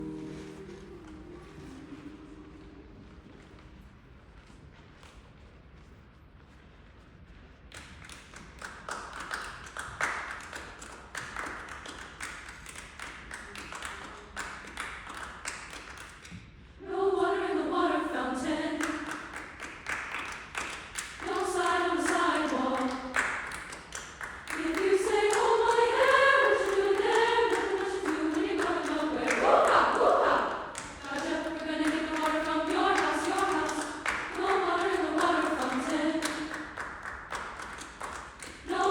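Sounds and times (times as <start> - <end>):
choir singing in harmony: 0.0 - 3.6, 16.8 - 19.3, 21.2 - 23.4, 24.4 - 37.0, 38.6 - 38.9
rhythmic clapping: 7.7 - 16.3, 18.5 - 38.9.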